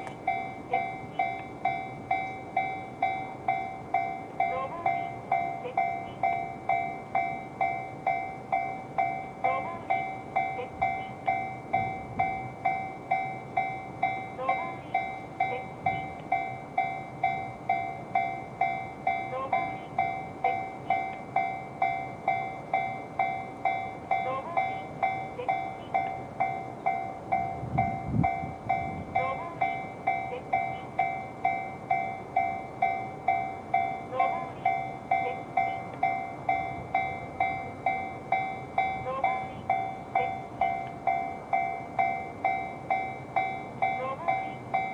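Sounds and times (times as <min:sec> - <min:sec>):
level crossing warning bell: 0:00.0 - 0:44.9.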